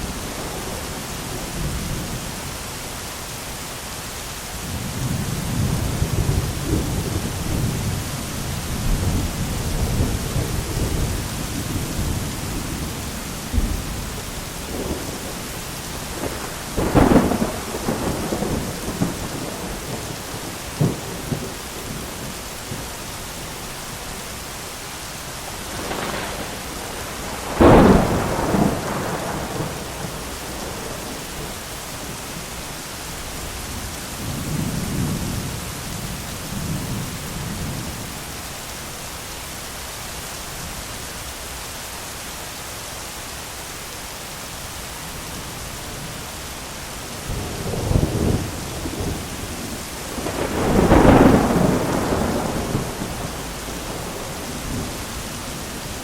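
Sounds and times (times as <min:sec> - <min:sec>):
steady rain hiss: 0:00.0 - 0:56.0
rolling thunder: 0:04.6 - 0:23.0, 0:25.6 - 0:32.5, 0:47.2 - 0:56.0.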